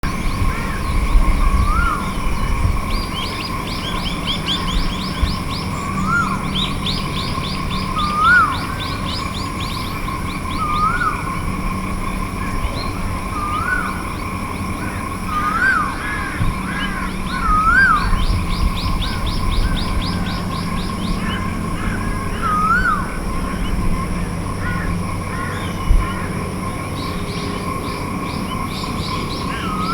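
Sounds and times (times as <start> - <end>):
bird whistled call: 1.4 - 2.2, 3.0 - 11.3, 12.8 - 14.0, 15.3 - 16.2, 16.8 - 21.5, 22.3 - 23.2, 28.9 - 29.9.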